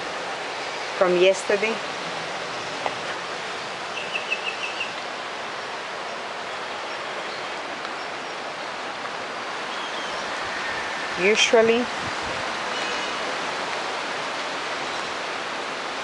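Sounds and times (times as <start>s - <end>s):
wind blowing through trees: 0.0s - 16.0s
bird chirping: 3.5s - 5.0s.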